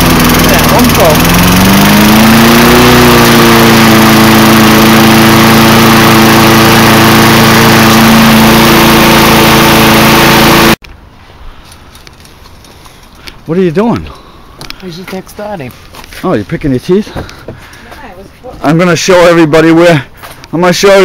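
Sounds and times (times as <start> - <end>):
lawnmower engine running: 0.0 - 10.8.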